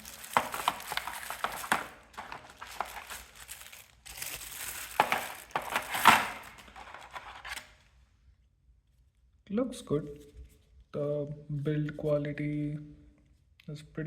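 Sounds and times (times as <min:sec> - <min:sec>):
packaging crinkling: 0:00.0 - 0:07.8.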